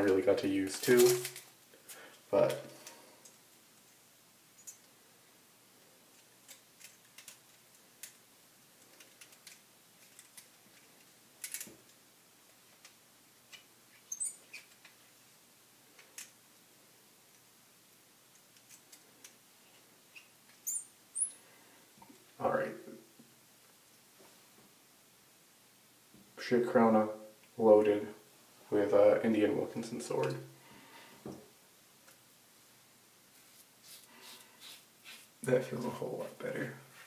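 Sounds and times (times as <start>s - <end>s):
high metallic chirps: 20.2s - 21.4s.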